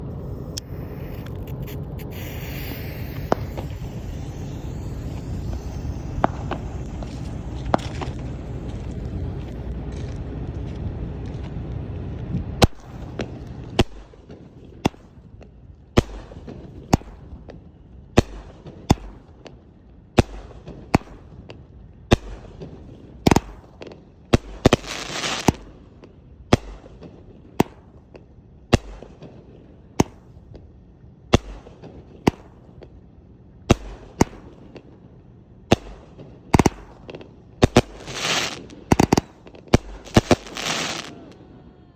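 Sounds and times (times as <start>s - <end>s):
fireworks shots: 0.0s - 9.8s, 12.6s - 15.3s, 16.0s - 19.5s, 20.2s - 21.6s, 22.2s - 26.0s, 26.6s - 28.2s, 28.8s - 30.5s, 31.4s - 32.9s, 33.7s - 35.0s, 35.7s - 41.4s
hissing crackle: 0.0s - 9.8s, 36.6s - 41.4s
steady rumbling noise: 0.0s - 14.2s, 35.5s - 41.9s.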